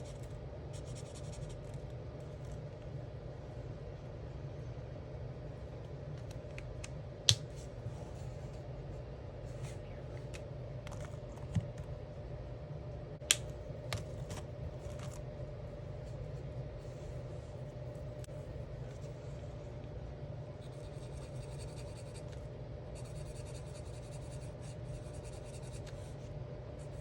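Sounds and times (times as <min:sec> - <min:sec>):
markers scratching on paper: 0:00.0 - 0:01.8, 0:23.0 - 0:26.1
steady low hum: 0:00.0 - 0:27.0.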